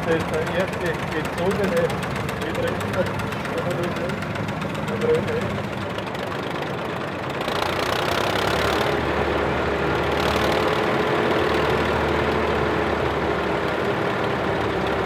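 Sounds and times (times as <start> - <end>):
tractor engine and combine droning: 0.0 - 15.0.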